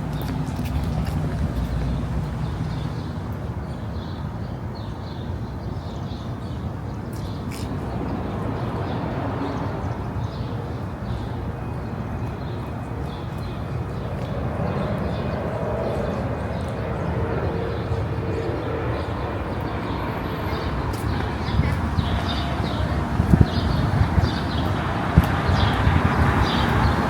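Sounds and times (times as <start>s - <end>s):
road traffic rumble: 0.0s - 27.0s.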